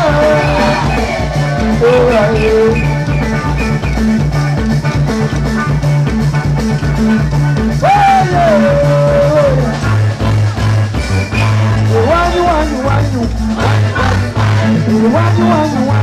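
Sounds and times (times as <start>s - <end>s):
sliding melody line: 0.0s - 6.2s
band music with bass beat: 0.0s - 16.0s.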